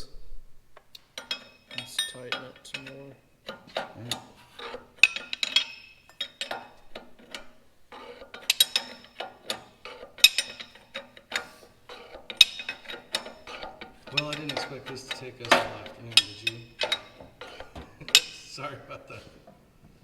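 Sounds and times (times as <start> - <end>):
wrench clinking on metal: 1.1 - 18.8.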